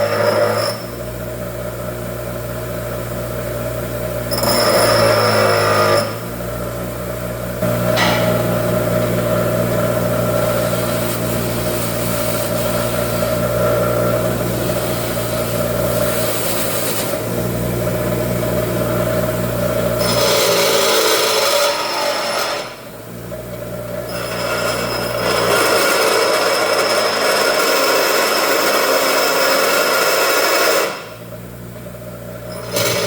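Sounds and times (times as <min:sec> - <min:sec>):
small engine running: 0:24.1 - 0:31.2, 0:32.5 - 0:33.0.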